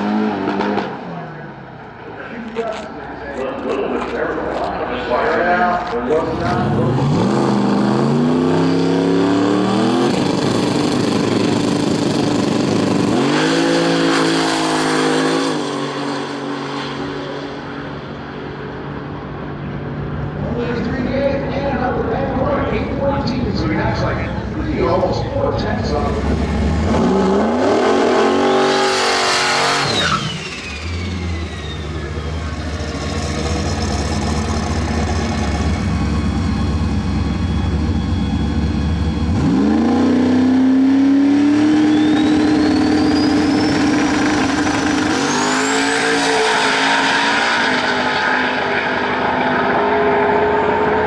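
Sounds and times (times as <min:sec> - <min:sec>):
race car engines at full throttle: 0:00.0 - 0:51.0
high whine: 0:29.8 - 0:40.5.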